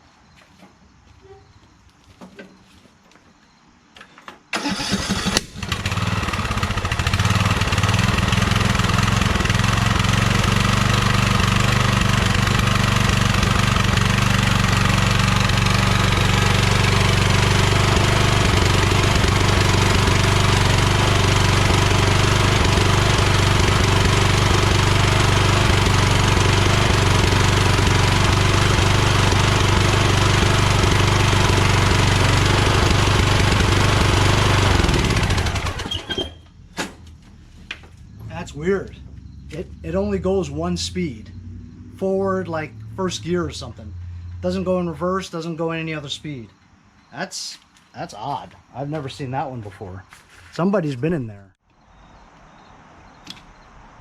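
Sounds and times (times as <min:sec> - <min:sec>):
electric starter cranking: 0:04.5 - 0:36.5
lawn tractor engine running: 0:04.5 - 0:40.7.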